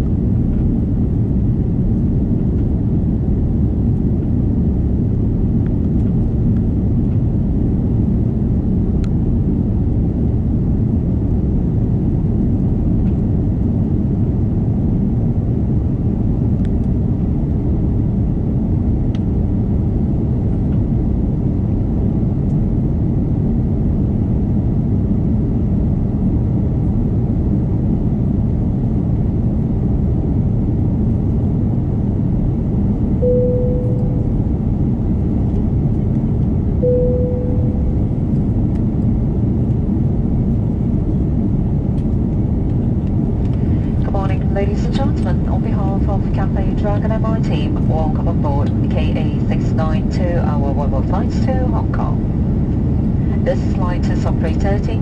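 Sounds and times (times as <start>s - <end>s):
airplane cabin engine rumble: 0.0s - 55.0s
single-tone chime: 33.2s - 34.3s, 36.8s - 38.0s.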